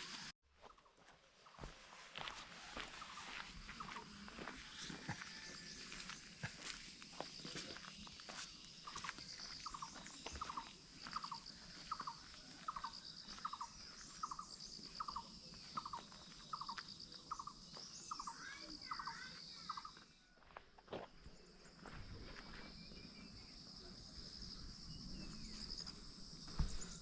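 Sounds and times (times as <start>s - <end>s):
insect-like chirping: 5.6s - 20.0s.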